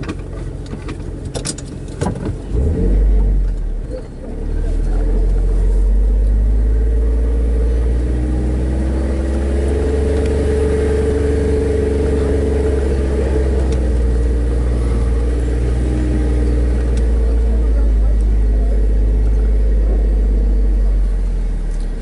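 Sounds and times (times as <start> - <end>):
car engine rumbling: 0.0 - 22.0.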